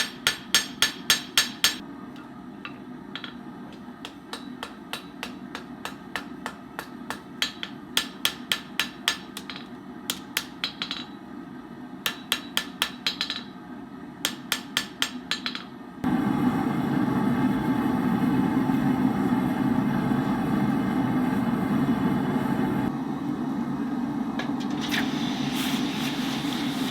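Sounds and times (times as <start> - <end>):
hammer striking steel: 0.0 - 1.8, 3.2 - 11.2, 12.1 - 13.5, 14.2 - 15.7.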